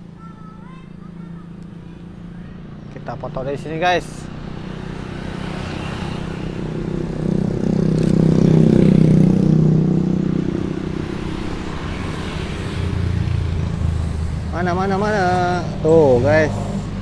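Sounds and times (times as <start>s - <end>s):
vehicle engine driving past: 4.4s - 17.0s.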